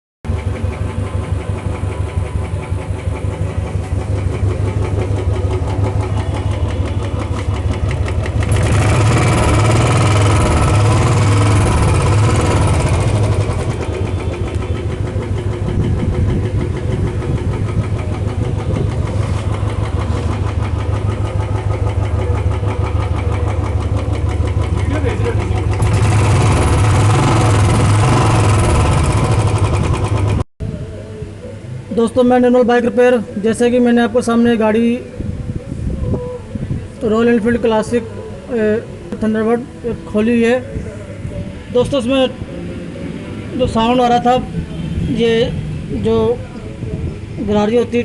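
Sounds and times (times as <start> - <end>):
rapid engine tapping: 0.3 - 30.4
motorcycle engine running: 0.3 - 30.8.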